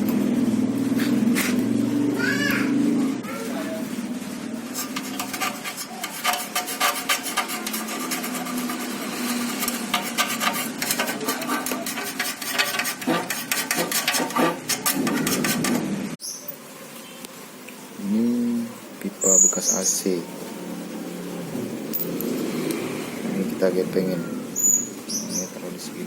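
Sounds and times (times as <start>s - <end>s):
hand scraping hard surface: 4.6s - 16.0s.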